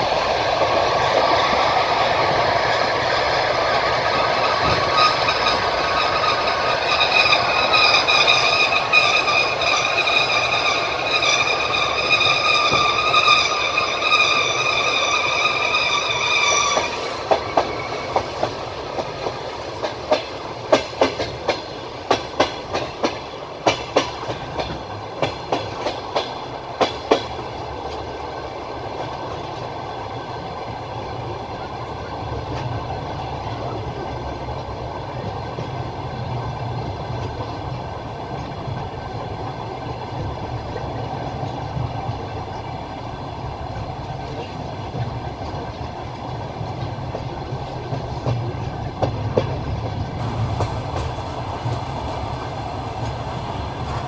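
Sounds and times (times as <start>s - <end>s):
train rolling rumble: 0.0s - 54.0s
train wheels clickety-clack: 0.0s - 54.0s.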